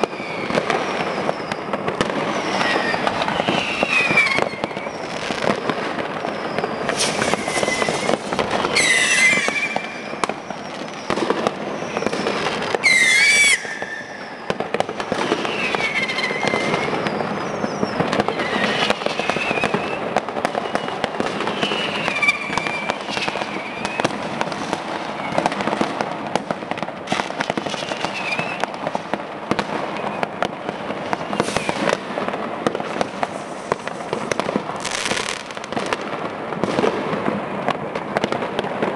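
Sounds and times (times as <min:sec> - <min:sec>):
firecrackers popping and crackling: 0:00.0 - 0:38.9
whistling fireworks: 0:00.0 - 0:38.9.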